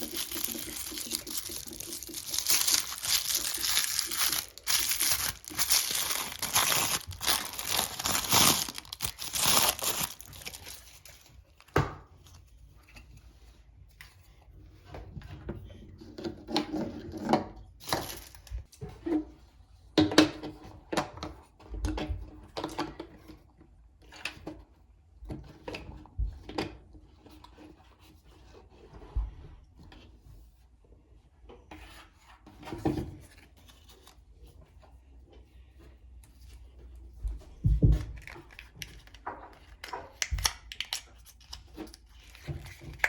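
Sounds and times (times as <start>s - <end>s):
plastic pieces rustling and clicking: 0.0s - 11.4s, 17.8s - 18.6s, 38.2s - 43.0s.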